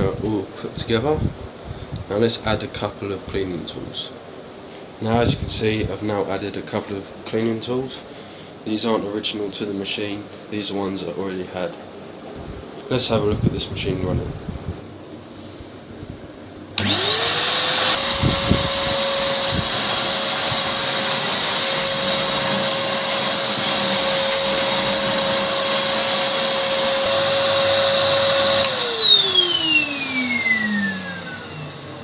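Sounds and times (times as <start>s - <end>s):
vacuum cleaner motor whine: 16.7s - 32.0s.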